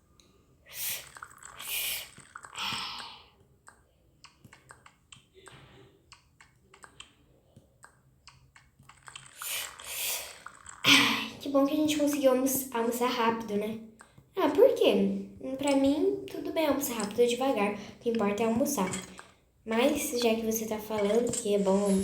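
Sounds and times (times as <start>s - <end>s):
small clicks and taps: 2.1s - 9.4s, 14.0s - 14.4s.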